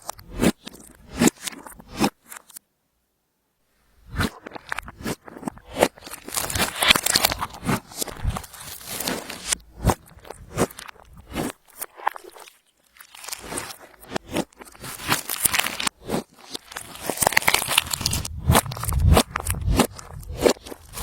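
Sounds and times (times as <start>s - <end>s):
slime sticky crackles and pops: 14.6s - 21.0s.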